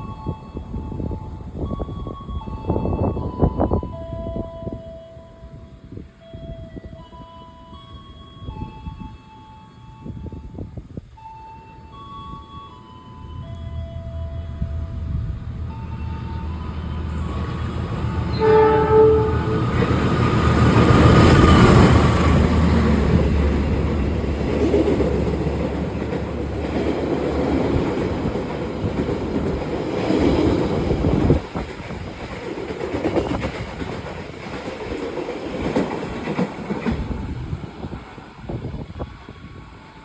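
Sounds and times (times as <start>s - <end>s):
train passing at speed: 0.0s - 40.0s
train horn blast: 14.2s - 22.2s.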